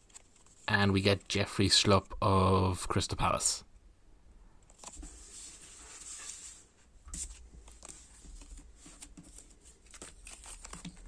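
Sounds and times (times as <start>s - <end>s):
soft paper rustle: 0.0s - 2.1s, 4.7s - 11.0s.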